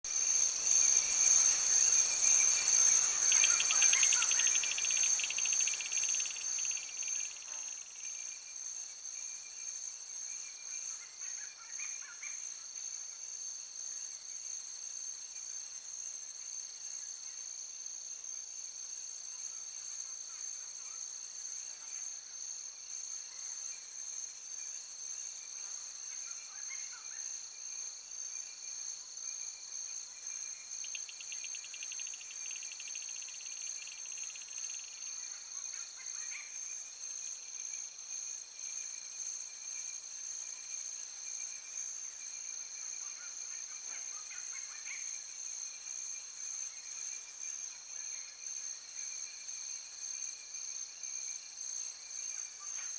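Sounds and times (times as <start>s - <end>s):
insect chorus shrilling: 0.1s - 8.1s, 30.2s - 35.3s
fast pulsing insect trill: 0.1s - 8.2s, 30.2s - 35.3s.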